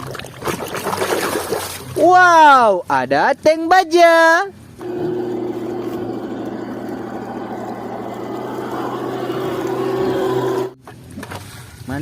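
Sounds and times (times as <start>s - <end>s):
engine running with low hum: 4.6s - 11.2s.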